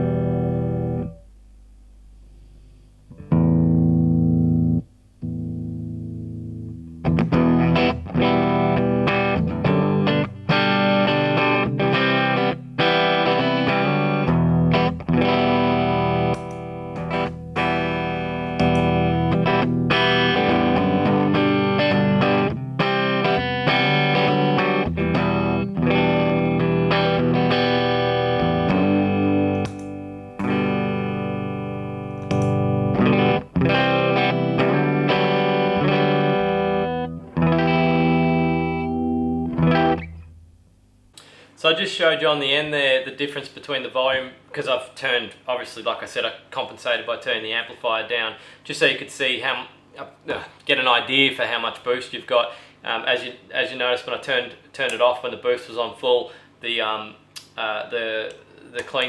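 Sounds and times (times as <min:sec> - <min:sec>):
distorted electric guitar chords: 0:00.0 - 0:01.4, 0:03.1 - 0:41.0.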